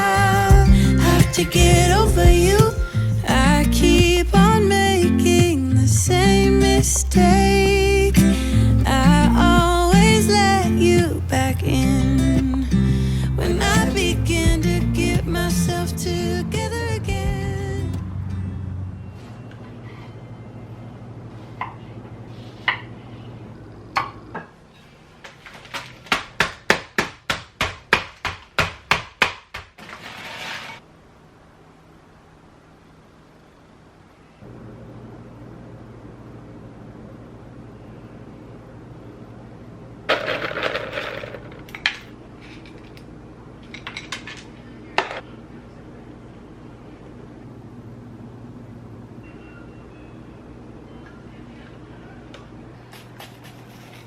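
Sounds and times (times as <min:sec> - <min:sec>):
low hum: 0:00.0 - 0:22.3.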